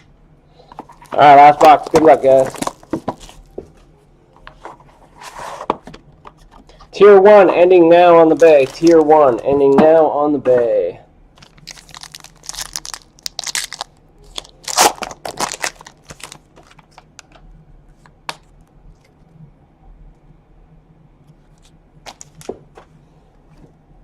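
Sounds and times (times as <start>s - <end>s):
cards clicking and rustling: 0.8s - 3.4s, 8.3s - 9.7s
packaging tearing and crinkling: 0.9s - 3.4s, 8.3s - 9.2s, 11.4s - 16.8s.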